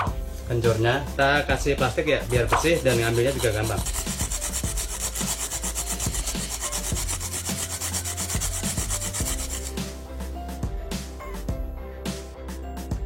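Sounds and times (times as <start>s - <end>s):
rhizomes being grated: 2.3s - 9.8s.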